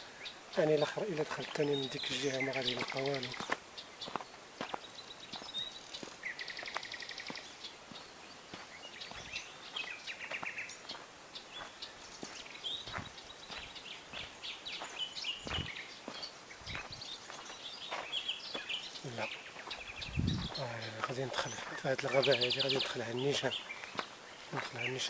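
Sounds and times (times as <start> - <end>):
birds calling and chirping: 0.0 - 25.0.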